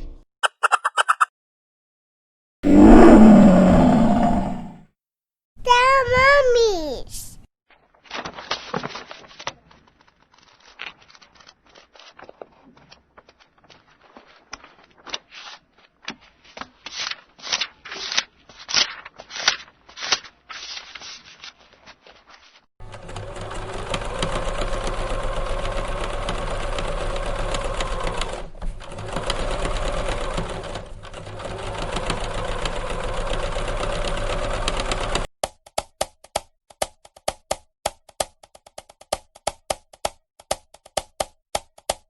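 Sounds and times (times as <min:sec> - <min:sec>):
paper pages turning: 0:07.8 - 0:22.7
sewing machine running: 0:22.8 - 0:35.2.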